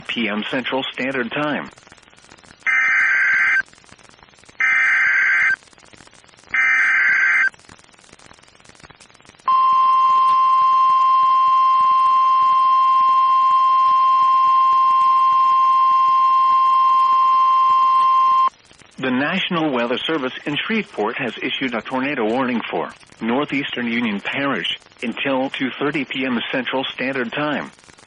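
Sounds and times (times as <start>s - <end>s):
warbling digital data burst: 4.6s - 5.6s
steady high alarm tone: 9.5s - 18.5s.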